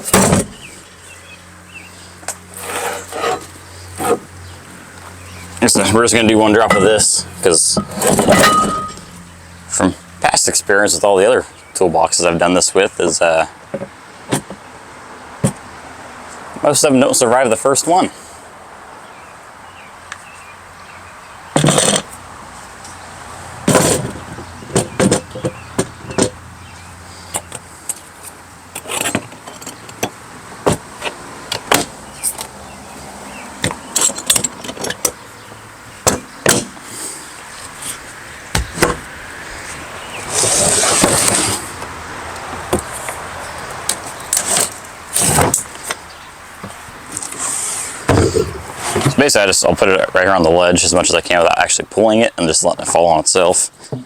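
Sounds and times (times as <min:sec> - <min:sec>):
toolbox scraping and sliding: 0:02.5 - 0:04.3, 0:05.6 - 0:09.2, 0:23.7 - 0:25.5, 0:28.8 - 0:30.1, 0:40.1 - 0:41.8, 0:47.2 - 0:49.4.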